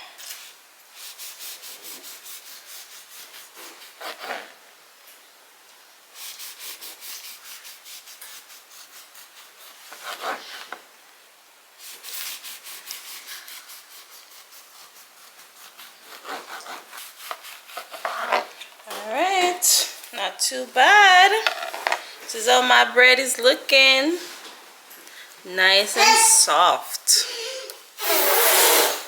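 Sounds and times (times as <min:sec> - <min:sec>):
knife sawing through bread: 0:01.0 - 0:04.6, 0:06.2 - 0:10.8, 0:11.8 - 0:18.6.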